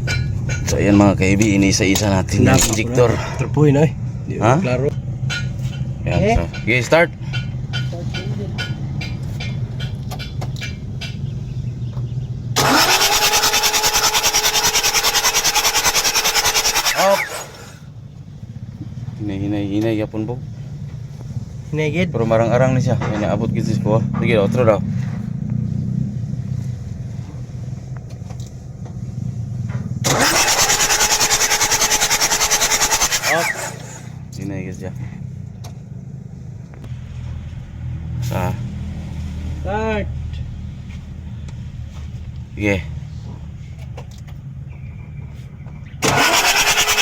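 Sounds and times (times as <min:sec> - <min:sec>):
diesel engine rumbling: 0:00.0 - 0:47.0
diesel engine starter whine: 0:12.6 - 0:18.0, 0:30.0 - 0:34.3, 0:45.8 - 0:47.0.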